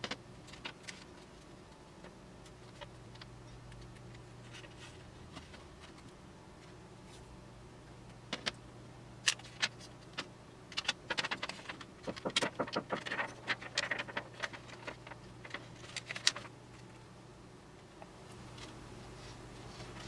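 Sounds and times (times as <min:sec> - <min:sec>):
plastic sheets crinkling: 0:09.4 - 0:16.9.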